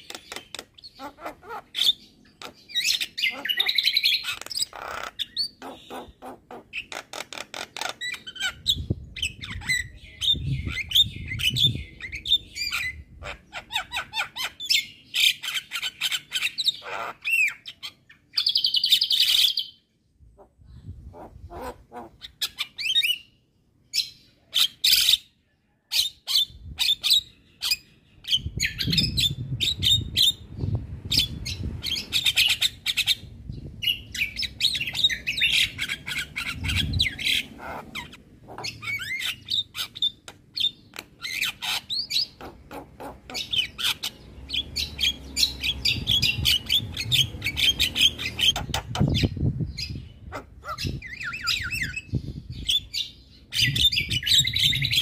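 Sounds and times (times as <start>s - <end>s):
bird chirps whistles and squawks: 0.0s - 19.8s, 21.1s - 55.0s.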